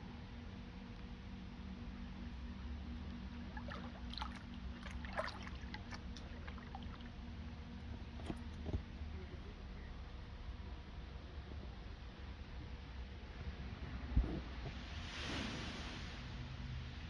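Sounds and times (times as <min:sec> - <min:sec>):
steady low hum: 0:00.0 - 0:15.0
small splashes: 0:03.3 - 0:08.8
water splashing and lapping: 0:03.3 - 0:08.8.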